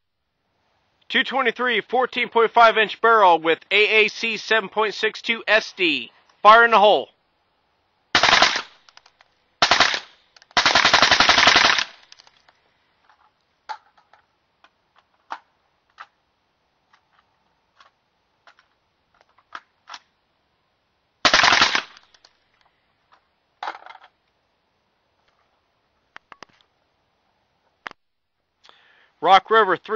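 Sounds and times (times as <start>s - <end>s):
suppressed rifle automatic fire: 8.2s - 8.8s, 9.6s - 12.0s, 21.2s - 22.0s
faint clicks: 8.8s - 9.4s.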